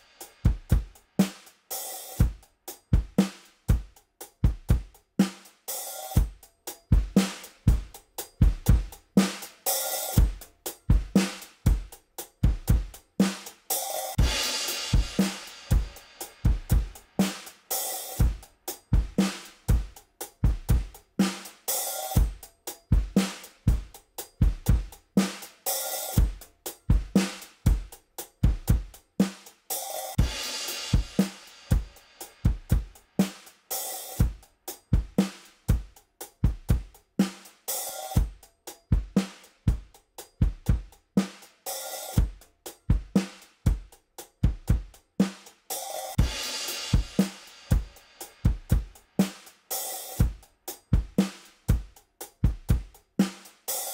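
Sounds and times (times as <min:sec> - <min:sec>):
crash cymbal: 0:00.0 - 0:02.3, 0:13.3 - 0:19.7, 0:29.7 - 0:34.3, 0:45.7 - 0:50.3
drum kit groove: 0:00.0 - 0:53.9.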